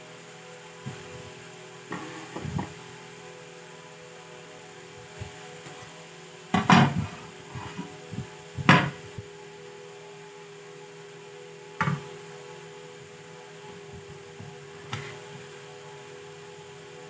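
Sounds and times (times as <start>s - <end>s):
steady hum: 0.0s - 17.0s
sharp knocks on bench: 8.6s - 9.0s, 11.8s - 12.1s.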